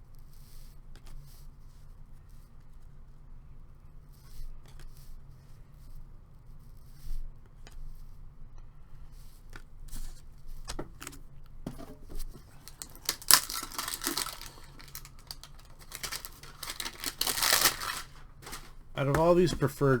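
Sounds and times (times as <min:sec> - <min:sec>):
cards and tins clicking: 0:10.7 - 0:20.0
wrapper rustling and tearing: 0:11.9 - 0:20.0.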